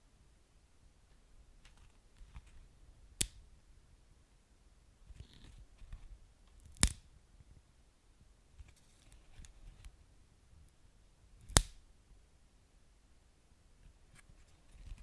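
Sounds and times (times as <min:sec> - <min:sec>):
wood fire crackling: 0:11.5 - 0:11.8.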